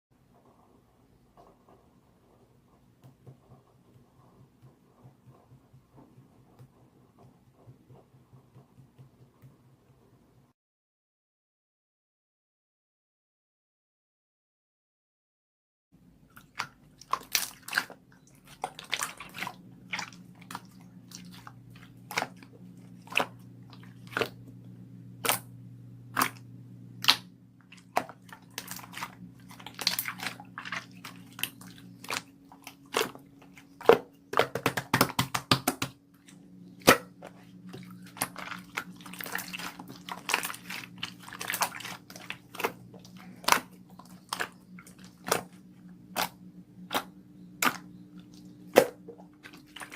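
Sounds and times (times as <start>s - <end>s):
low electrical hum: 16.0s - 49.9s
crunchy food being chewed: 27.0s - 34.4s, 36.2s - 48.8s.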